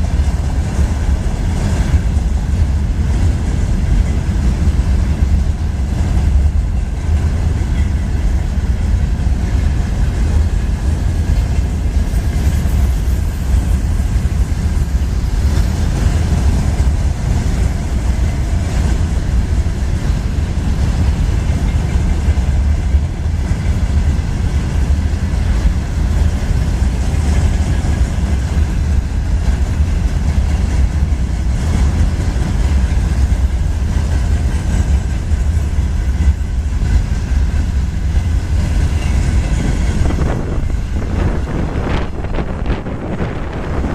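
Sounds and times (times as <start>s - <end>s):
freight train rumbling past: 0.0s - 43.9s.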